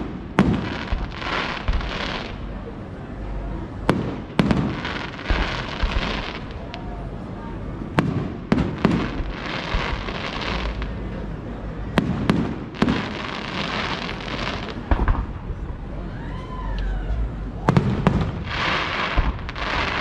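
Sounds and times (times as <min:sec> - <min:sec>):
firework crackling shower: 0:00.0 - 0:15.7, 0:17.6 - 0:20.0
firework shells bursting: 0:03.9 - 0:06.8, 0:17.7 - 0:20.0.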